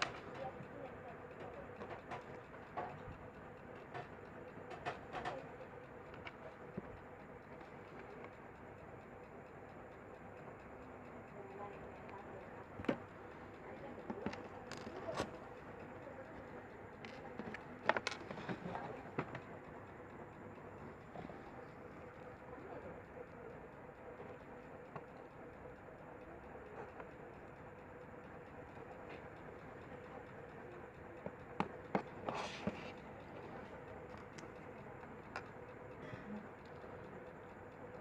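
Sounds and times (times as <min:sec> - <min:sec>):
faint steady hum: 0:00.0 - 0:38.0
tools clicking and tapping: 0:14.0 - 0:16.0, 0:17.0 - 0:19.4.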